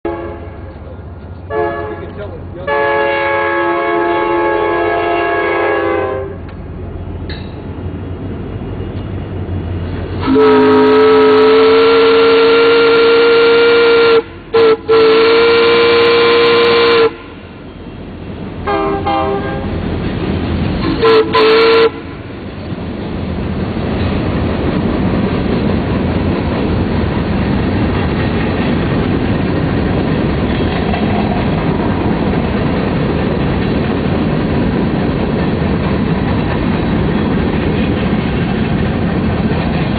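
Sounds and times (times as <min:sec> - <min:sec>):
passing train rumble: 0:00.0 - 0:39.9
steam chime whistle blasts: 0:10.2 - 0:17.2.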